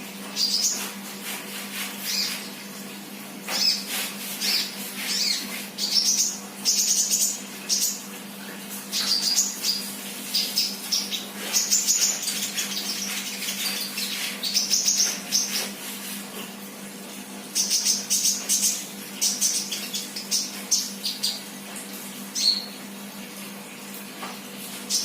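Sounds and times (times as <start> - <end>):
low electrical hum: 0.0 - 25.0
bird chirping and trilling: 0.4 - 0.9, 2.0 - 2.4, 3.5 - 8.1, 8.9 - 15.7, 17.6 - 21.5, 22.4 - 22.8.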